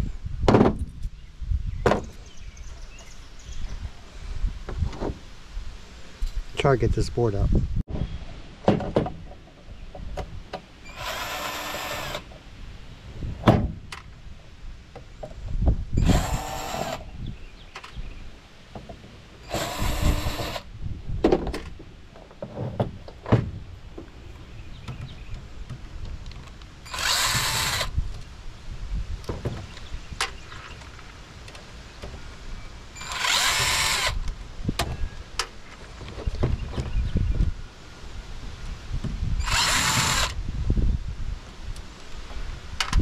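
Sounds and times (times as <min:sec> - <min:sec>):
power drill driving screws: 0:10.9 - 0:12.3, 0:16.0 - 0:17.0, 0:19.4 - 0:20.7, 0:26.8 - 0:27.9, 0:33.0 - 0:34.2, 0:39.4 - 0:40.4.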